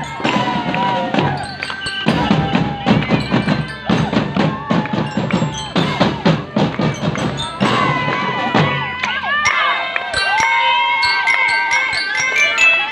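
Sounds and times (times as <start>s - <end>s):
drums playing quick rhythm: 0.0s - 9.7s
bell-like melody: 0.0s - 12.9s.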